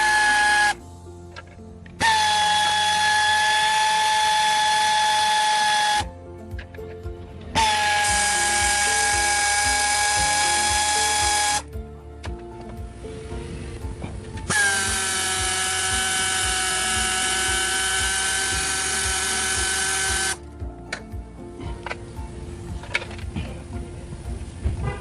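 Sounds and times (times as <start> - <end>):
power tool whining: 0.0 - 0.8, 2.0 - 6.1, 7.6 - 11.7, 14.4 - 20.4
background music: 0.0 - 25.0.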